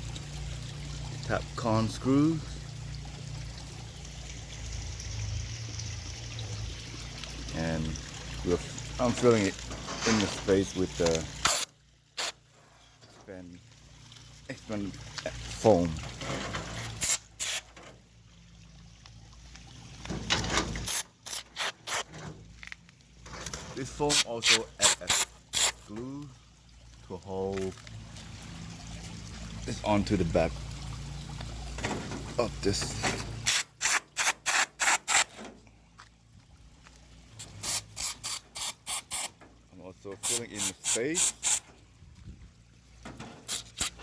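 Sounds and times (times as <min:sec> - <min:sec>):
spray foam sputtering spurts: 0:10.0 - 0:12.4, 0:16.8 - 0:17.8, 0:20.8 - 0:22.1, 0:23.9 - 0:25.9, 0:33.4 - 0:35.4, 0:37.4 - 0:39.4, 0:40.2 - 0:41.7, 0:43.4 - 0:44.0
spray foam hissing: 0:37.4 - 0:39.3.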